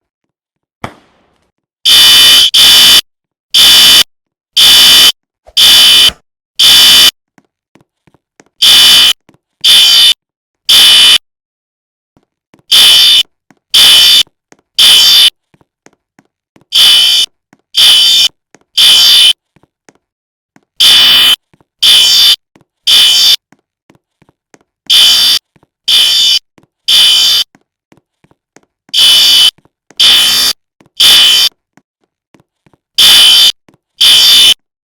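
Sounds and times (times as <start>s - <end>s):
fire alarm beeping: 1.9s - 7.2s, 8.6s - 11.2s, 12.7s - 13.2s, 13.8s - 15.4s, 16.8s - 19.4s, 20.8s - 23.4s, 24.9s - 27.5s, 29.0s - 31.5s, 33.0s - 34.6s.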